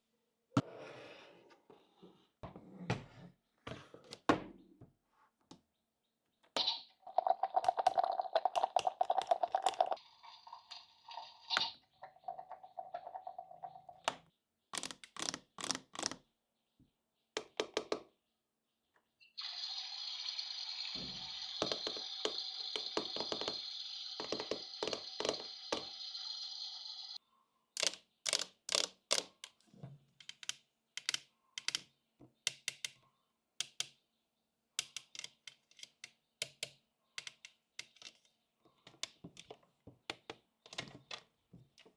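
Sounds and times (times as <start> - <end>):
plastic toy pieces clicking: 27.8 - 29.6, 30.2 - 31.8, 32.5 - 33.0, 33.6 - 33.9, 34.8 - 38.3.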